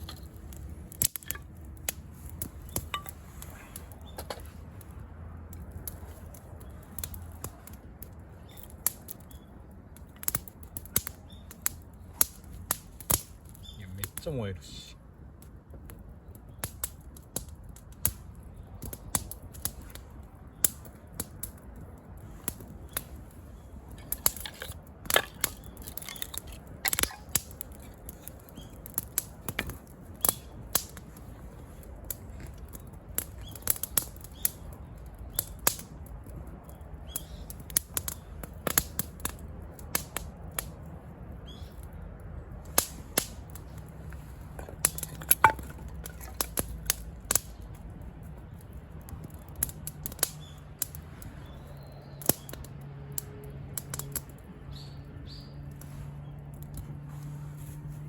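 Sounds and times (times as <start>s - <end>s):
campfire crackling: 0.0s - 58.0s
fire popping: 0.0s - 58.0s.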